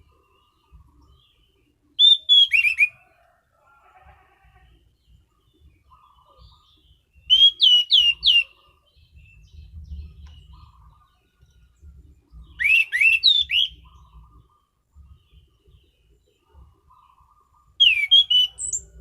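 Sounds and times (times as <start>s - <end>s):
thrush whistled song: 2.0s - 3.0s, 7.3s - 8.5s, 12.4s - 13.9s, 17.8s - 19.0s.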